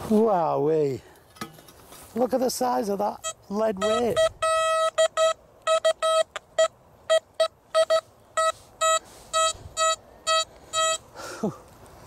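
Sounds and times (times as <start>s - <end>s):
metal detector short beeps: 3.2s - 11.1s.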